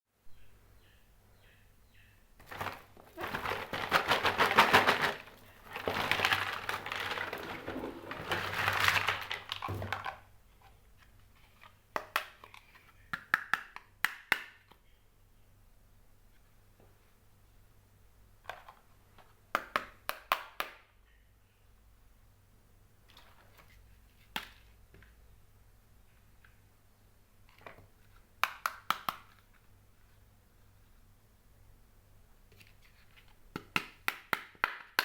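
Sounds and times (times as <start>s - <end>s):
plastic packaging crinkling: 2.4s - 10.2s
hard plastic pieces clicking: 2.4s - 10.3s.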